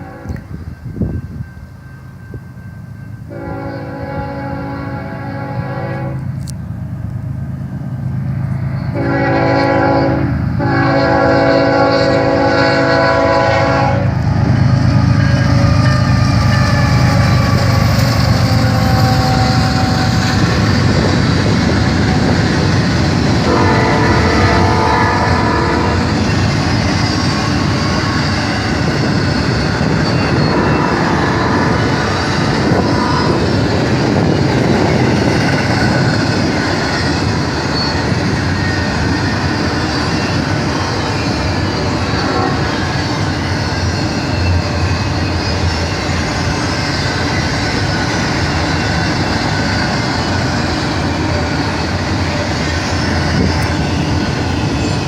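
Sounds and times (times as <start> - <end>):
train horn blast: 0.0 - 1.2, 3.3 - 6.5, 8.7 - 21.2, 21.9 - 29.0, 29.8 - 35.0, 41.8 - 45.6
diesel locomotive engines rumbling: 0.0 - 55.0
train cars clickety-clack: 0.0 - 55.0.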